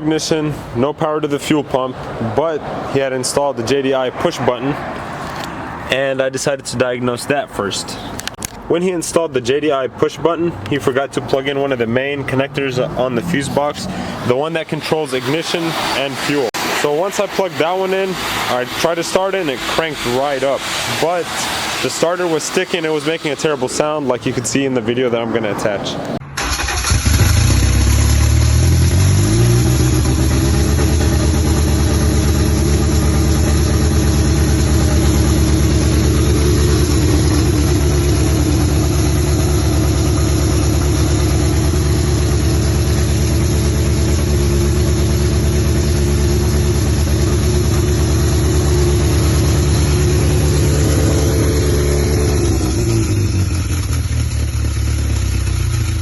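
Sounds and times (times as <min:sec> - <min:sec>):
car engine running: 0:10.7 - 0:24.5, 0:26.0 - 0:56.0
starter motor whirring: 0:26.4 - 0:31.0.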